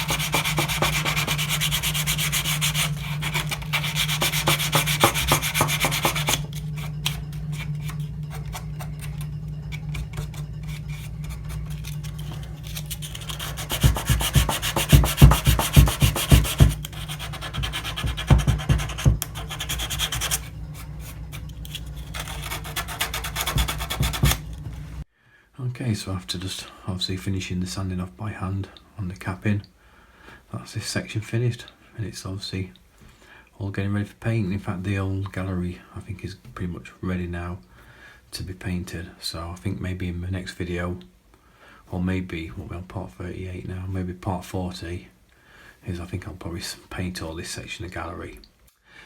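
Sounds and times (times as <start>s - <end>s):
sandpaper rubbing on wood: 0.0s - 8.6s, 10.1s - 24.6s
steady low hum: 0.0s - 25.1s.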